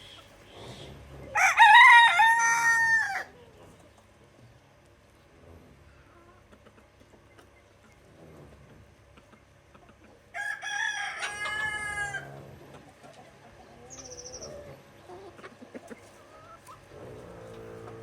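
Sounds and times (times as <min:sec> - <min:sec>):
rooster crowing: 0:01.3 - 0:03.3, 0:10.3 - 0:12.4
chicken clucking: 0:05.2 - 0:18.0.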